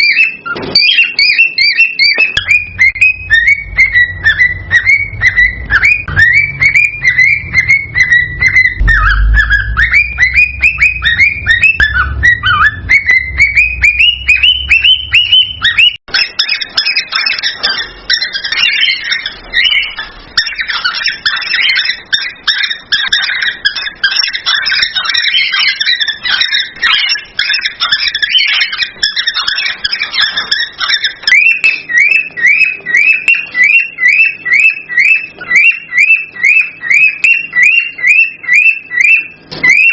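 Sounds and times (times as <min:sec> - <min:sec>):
cockatiels chirping: 0:00.0 - 0:39.9
low rumble: 0:06.1 - 0:15.7.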